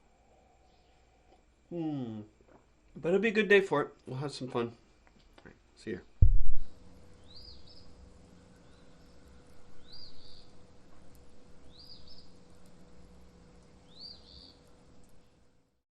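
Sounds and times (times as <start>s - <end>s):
faint steady hum: 0.0s - 15.8s
low rumble: 6.2s - 6.8s
small bird chirping: 7.2s - 12.8s, 13.6s - 15.4s.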